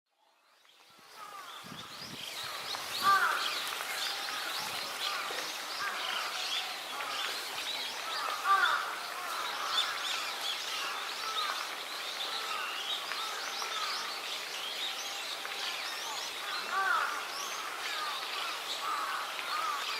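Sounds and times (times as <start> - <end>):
small birds chirping chorus: 0.2 - 19.9
loud bird calls: 0.9 - 19.9.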